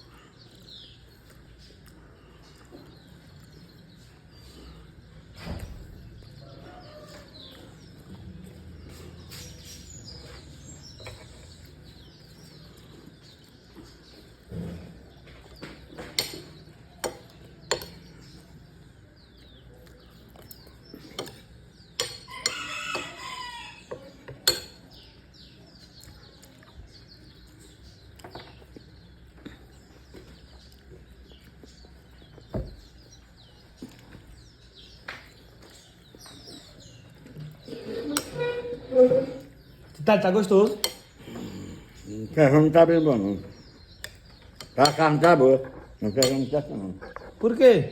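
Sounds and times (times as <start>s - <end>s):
chickens clucking: 27.6s - 47.7s.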